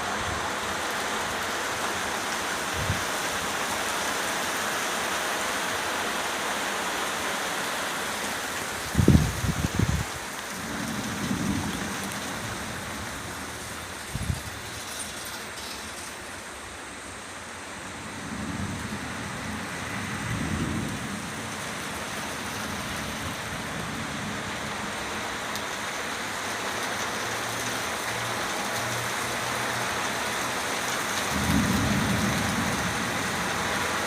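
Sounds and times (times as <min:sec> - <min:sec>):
heavy rain: 0:00.0 - 0:34.0
low rolls of thunder: 0:08.9 - 0:14.6, 0:18.1 - 0:25.0, 0:31.2 - 0:34.0.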